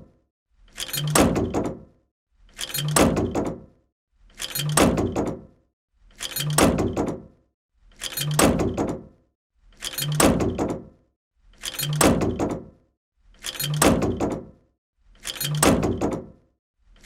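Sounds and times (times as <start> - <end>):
heavy door slamming shut: 1.0 - 1.8, 2.8 - 3.6, 4.7 - 5.4, 6.5 - 7.2, 8.3 - 9.1, 10.1 - 10.8, 11.9 - 12.7, 13.7 - 14.5, 15.5 - 16.3.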